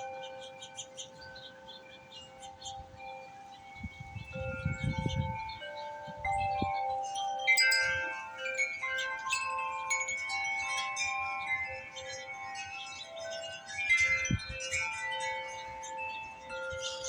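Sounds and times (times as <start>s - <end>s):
wind chimes ringing: 0.0s - 17.0s
wind rumble on microphone: 3.8s - 7.0s, 13.9s - 14.9s.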